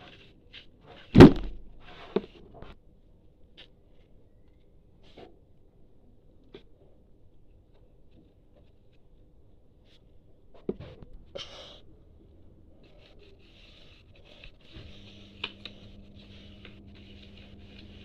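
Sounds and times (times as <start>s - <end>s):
sharp knock: 1.2s - 1.8s
faint steady hum: 9.7s - 18.0s
scraping and clicking handling noise: 12.8s - 18.0s.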